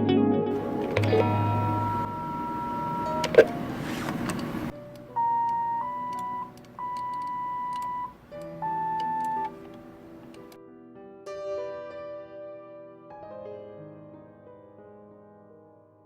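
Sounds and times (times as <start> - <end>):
phone keypad beeps: 0.6 - 9.6
click: 0.7 - 2.1, 3.0 - 10.6.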